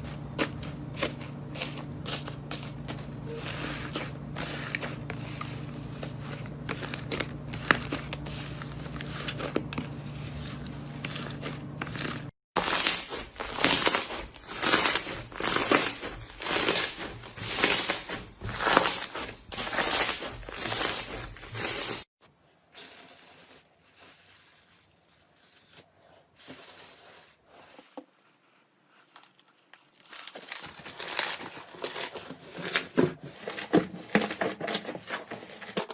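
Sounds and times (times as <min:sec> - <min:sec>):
slime squishing and crackling: 0:00.1 - 0:22.0.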